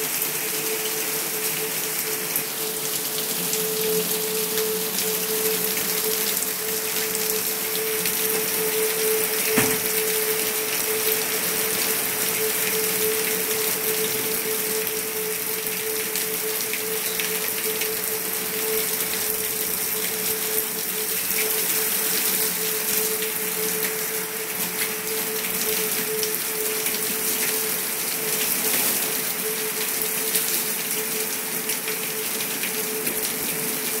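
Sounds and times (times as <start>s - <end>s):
heavy rain pouring: 0.0s - 34.0s.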